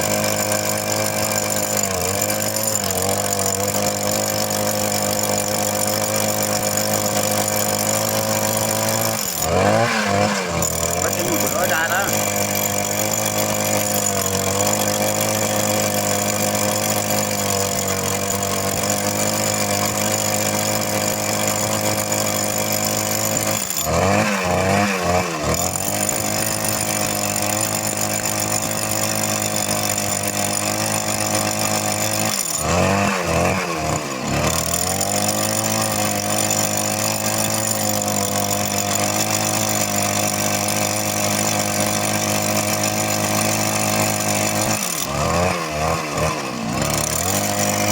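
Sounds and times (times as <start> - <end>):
petrol rock drill drilling: 0.0 - 47.9.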